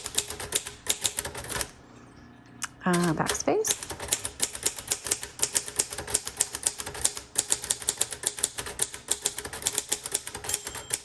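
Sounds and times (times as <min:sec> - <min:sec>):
typewriter keys striking: 0:00.0 - 0:01.7, 0:02.9 - 0:11.0
typewriter bell ringing: 0:09.4 - 0:11.0.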